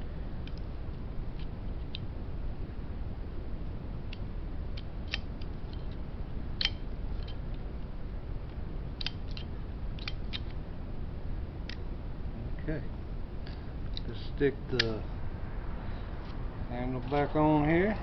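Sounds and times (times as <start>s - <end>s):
low steady hum: 0.0s - 18.0s
small metal parts clicking: 4.8s - 6.0s, 6.6s - 7.4s, 9.0s - 10.6s.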